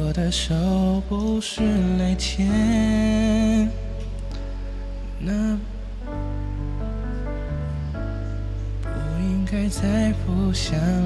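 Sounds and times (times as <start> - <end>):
slow ballad backing track: 0.0 - 11.0.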